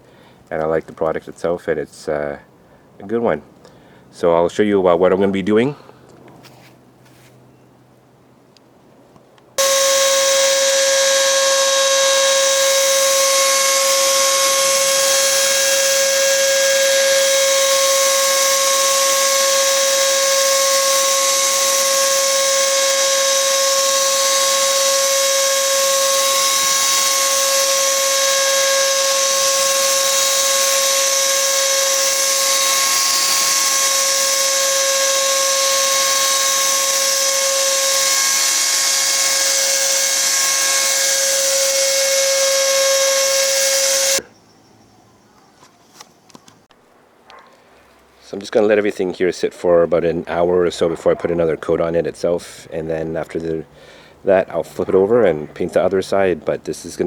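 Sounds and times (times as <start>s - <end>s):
paint sprayer motor whine: 9.6s - 44.3s.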